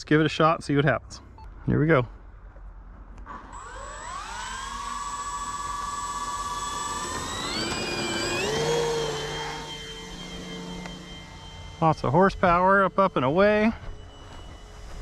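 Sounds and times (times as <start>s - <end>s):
electric motor propeller whine: 3.2s - 15.0s.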